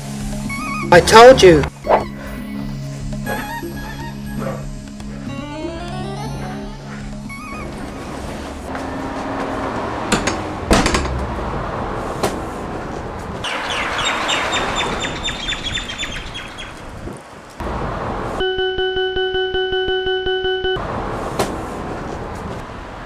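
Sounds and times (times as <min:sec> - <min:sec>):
rapid high chirps: 0:00.4 - 0:01.2
passing traffic: 0:04.6 - 0:23.0
sharp knocks: 0:10.0 - 0:11.3.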